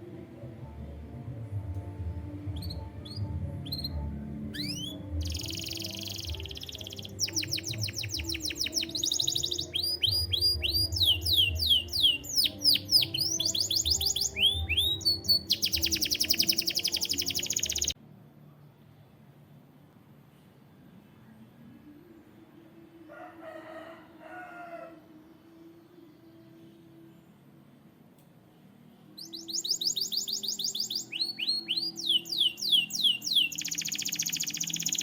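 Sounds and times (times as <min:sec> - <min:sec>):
canary singing trills: 0:02.4 - 0:18.0, 0:29.2 - 0:35.0.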